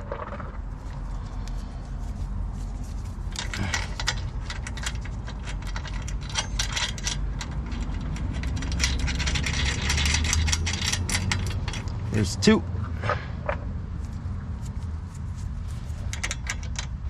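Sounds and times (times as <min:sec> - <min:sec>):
low steady rumble: 0:00.0 - 0:17.0
metal hardware clicking and clinking: 0:03.3 - 0:12.2, 0:16.0 - 0:17.0.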